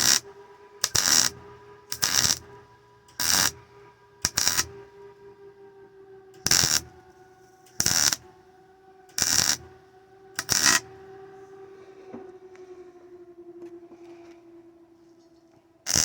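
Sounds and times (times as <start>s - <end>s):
welder arc crackling: 0.0s - 4.9s, 6.4s - 7.1s, 7.7s - 8.3s, 9.1s - 9.8s, 10.4s - 11.1s
steady hum: 0.0s - 16.0s.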